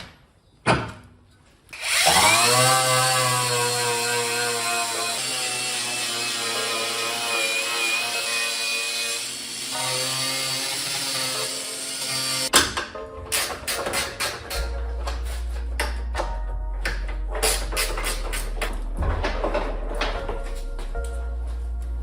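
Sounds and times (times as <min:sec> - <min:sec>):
power tool whining: 0:01.7 - 0:12.5.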